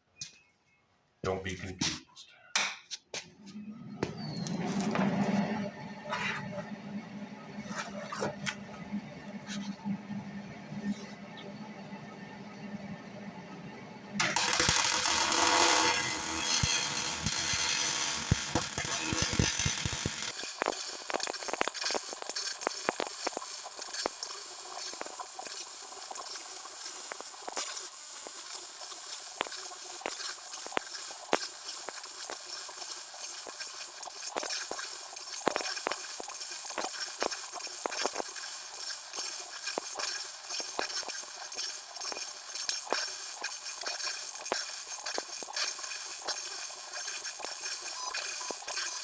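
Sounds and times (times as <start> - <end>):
sharp welding pops: 14.2 - 49.0
welder crackling sizzle: 14.2 - 49.0.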